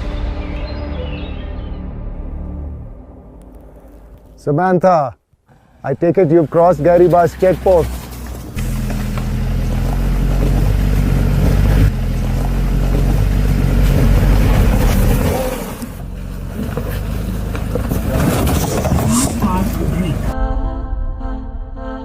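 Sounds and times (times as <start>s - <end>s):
road and wind noise: 5.4s - 20.4s
car engine running low: 5.5s - 20.4s.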